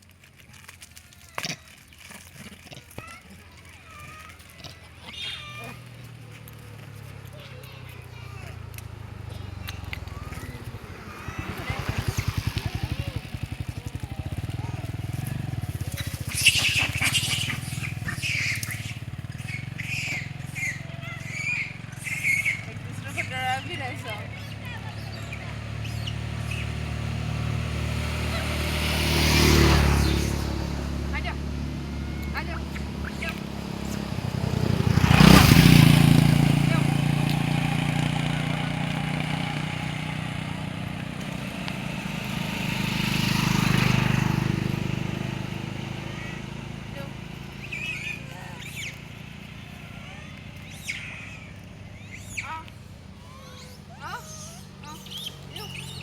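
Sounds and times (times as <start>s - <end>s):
engine idling: 2.1s - 56.0s
high chirping animal calls: 3.8s - 5.9s, 9.2s - 27.3s, 32.0s - 36.0s, 46.0s - 56.0s.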